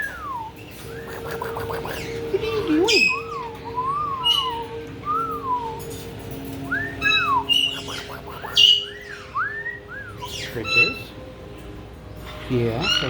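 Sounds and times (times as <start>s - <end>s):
parrot chirps: 0.0s - 4.7s, 7.0s - 9.4s
parrots whistling: 0.0s - 11.2s.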